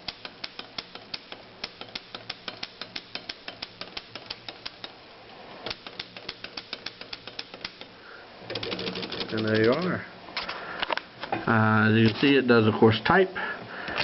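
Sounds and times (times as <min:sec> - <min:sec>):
typewriter keys striking: 0:00.0 - 0:04.8, 0:05.7 - 0:07.9, 0:08.5 - 0:10.0.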